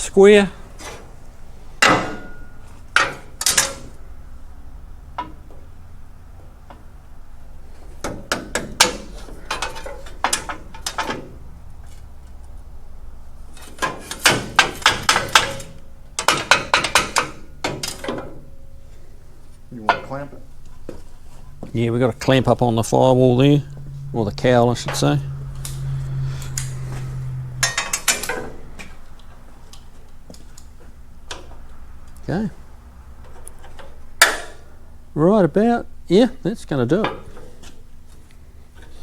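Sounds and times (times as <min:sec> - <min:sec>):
metal knocks on sheet metal: 0:08.0 - 0:09.2, 0:13.8 - 0:18.3.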